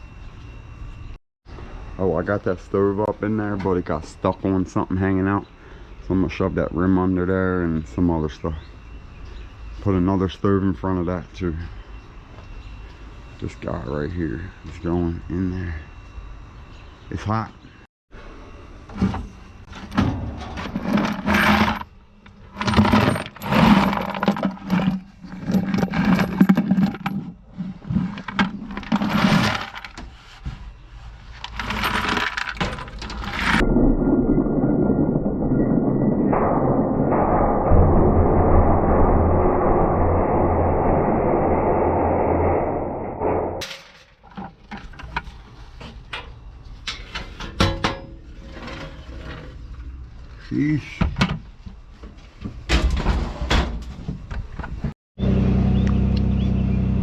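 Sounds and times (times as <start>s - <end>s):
loud noise with low hum: 0.0s - 57.0s
scrap metal clanking and rattling: 19.0s - 30.2s, 31.4s - 33.6s, 43.6s - 49.8s
metal parts knocking and clinking: 19.7s - 30.0s, 31.4s - 33.6s.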